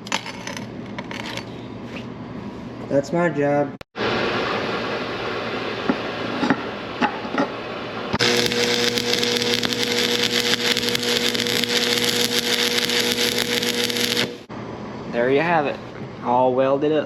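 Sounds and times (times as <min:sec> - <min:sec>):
electrical hum: 0:08.0 - 0:14.5
welding arc crackle: 0:08.2 - 0:14.5.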